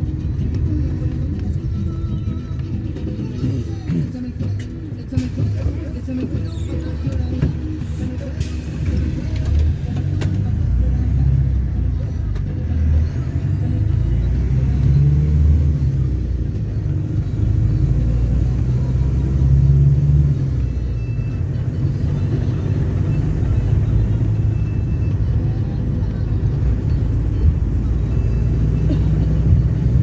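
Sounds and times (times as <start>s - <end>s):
diesel engine low rumble: 0.0s - 30.0s.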